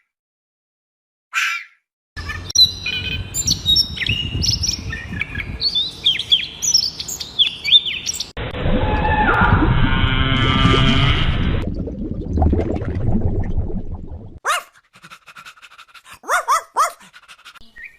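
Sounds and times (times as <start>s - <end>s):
songbird chirping and whistling: 2.4s - 8.3s.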